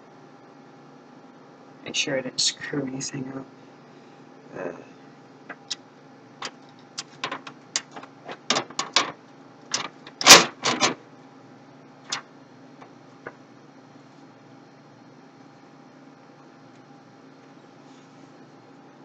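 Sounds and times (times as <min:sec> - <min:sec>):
computer parts clicking and tapping: 0:06.4 - 0:11.0.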